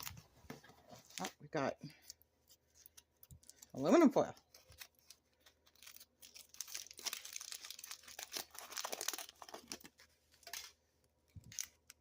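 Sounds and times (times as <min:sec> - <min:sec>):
aluminum foil crinkling: 0:02.7 - 0:10.8, 0:11.4 - 0:12.0.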